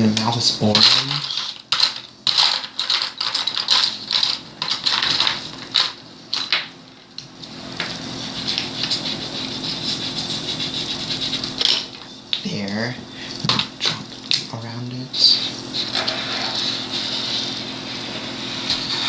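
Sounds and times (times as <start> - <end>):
scratchy colouring strokes on paper: 8.0 - 11.6, 15.3 - 19.0.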